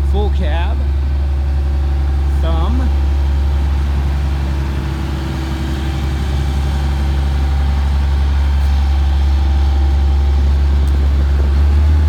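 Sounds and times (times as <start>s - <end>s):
excavator diesel engine idling: 0.0s - 12.0s.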